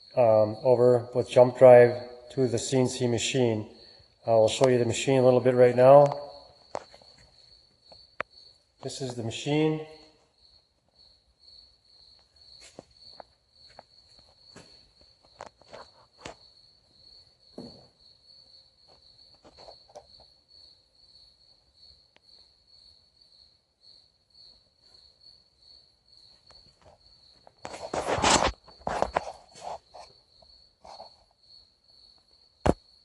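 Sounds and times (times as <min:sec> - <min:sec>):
faint clicks and steps: 0:06.0 - 0:09.2, 0:12.2 - 0:16.5.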